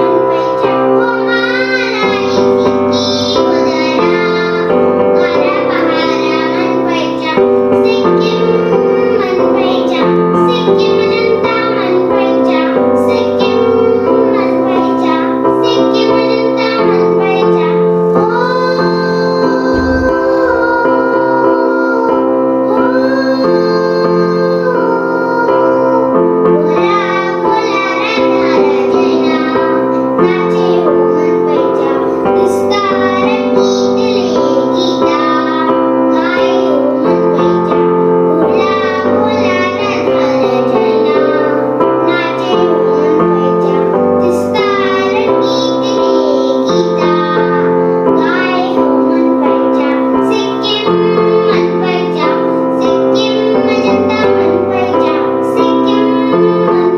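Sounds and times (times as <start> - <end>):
keyboard accompaniment: 0.0 - 56.9
children singing: 13.5 - 56.9.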